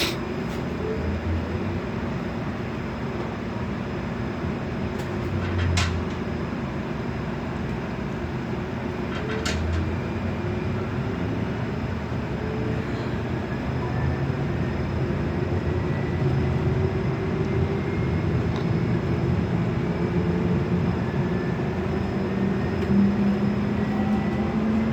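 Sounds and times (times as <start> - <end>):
person coughing: 0.0 - 0.2
vehicle engine drone: 9.5 - 24.9.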